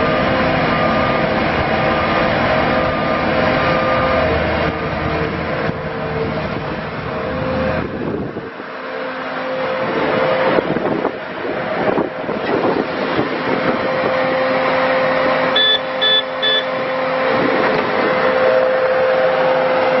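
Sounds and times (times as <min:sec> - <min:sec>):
diesel engine running: 0:00.0 - 0:20.0
backup alarm beeps: 0:15.6 - 0:16.8.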